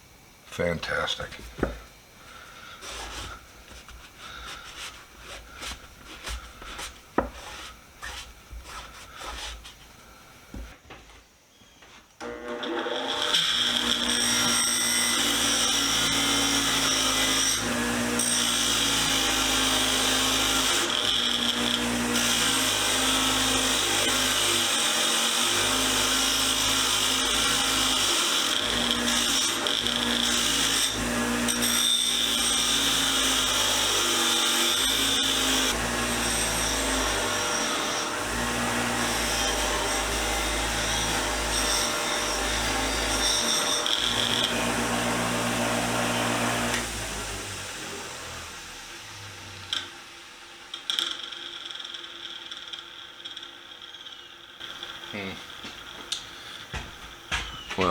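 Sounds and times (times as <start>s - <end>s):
screwdriver scratching on wire wheel: 2.8s - 9.7s.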